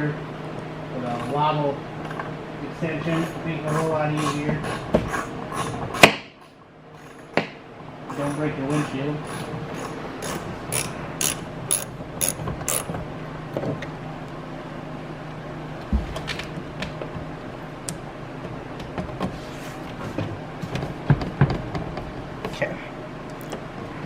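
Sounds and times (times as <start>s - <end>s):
ratchet wrench clicking: 8.2s - 12.9s.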